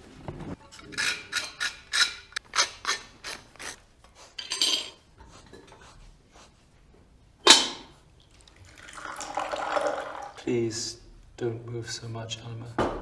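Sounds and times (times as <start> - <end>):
knife scraping butter on toast: 0.8 - 4.3.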